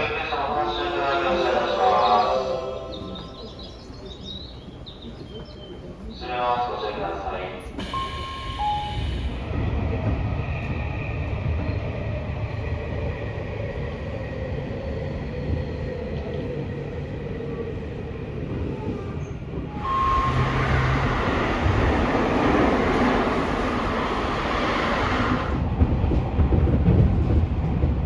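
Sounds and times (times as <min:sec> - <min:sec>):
train wheels rumbling on track: 0:00.0 - 0:28.0.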